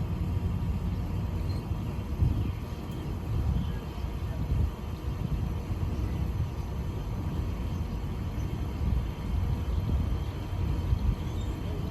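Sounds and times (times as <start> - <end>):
air conditioner running: 0.0 - 11.9.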